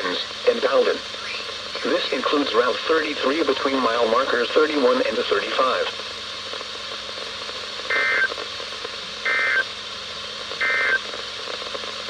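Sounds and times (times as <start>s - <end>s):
receiver hiss: 0.0s - 12.0s
buzzy two-tone data bursts: 7.9s - 8.3s, 9.2s - 9.7s, 10.6s - 11.0s.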